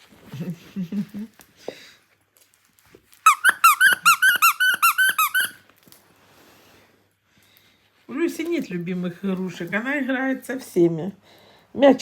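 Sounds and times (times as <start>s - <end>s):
squeaky dog toy squeaking: 3.2s - 5.6s.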